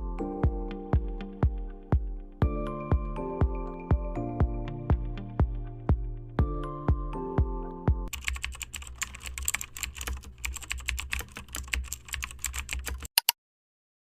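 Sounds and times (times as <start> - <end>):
music with a beat: 0.0 - 8.1
computer keyboard typing: 8.1 - 13.4.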